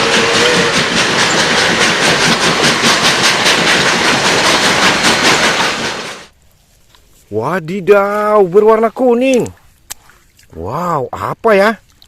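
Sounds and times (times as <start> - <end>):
train wheels clickety-clack: 0.0 - 6.3.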